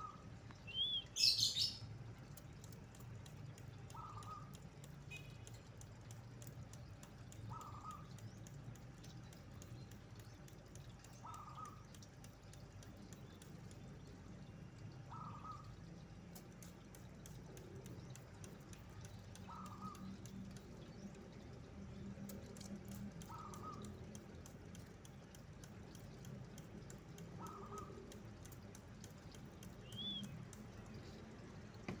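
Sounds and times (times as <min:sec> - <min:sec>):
bird calling: 0:00.0 - 0:01.8, 0:29.8 - 0:30.6.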